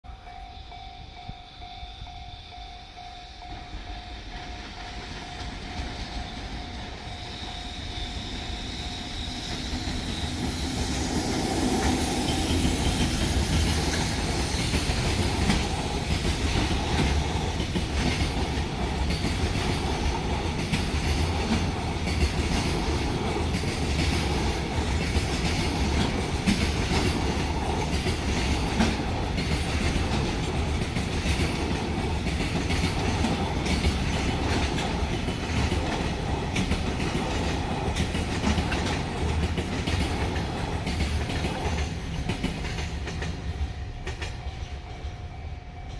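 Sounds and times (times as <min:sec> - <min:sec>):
crossing warning bell: 0:00.0 - 0:10.0, 0:44.0 - 0:45.9
freight train passing: 0:00.0 - 0:45.9
train wheels clickety-clack: 0:02.1 - 0:45.9.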